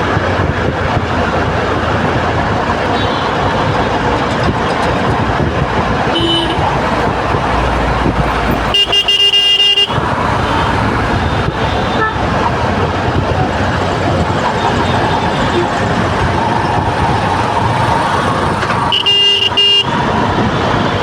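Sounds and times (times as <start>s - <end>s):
road traffic: 0.0s - 21.0s
vehicle horn: 3.0s - 3.7s, 6.1s - 12.3s, 18.9s - 20.0s.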